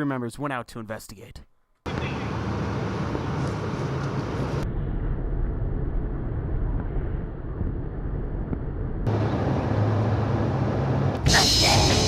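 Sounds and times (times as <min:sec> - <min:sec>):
low rumbling noise: 0:01.9 - 0:11.4.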